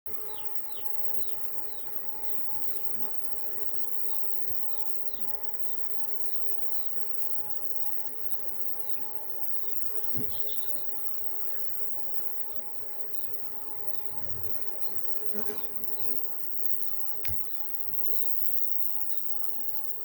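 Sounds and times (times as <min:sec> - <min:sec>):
small bird chirping: 0:00.2 - 0:02.0, 0:10.2 - 0:10.9.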